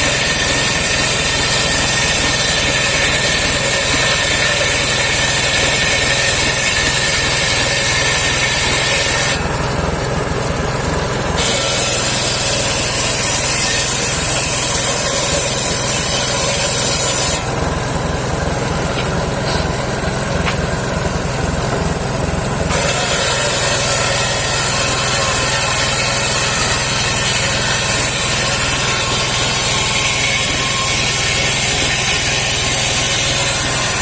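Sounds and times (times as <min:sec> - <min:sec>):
saw blade hissing through wood: 0:00.0 - 0:09.4, 0:11.4 - 0:17.6, 0:19.3 - 0:20.6, 0:22.7 - 0:34.0
engine droning: 0:09.3 - 0:34.0.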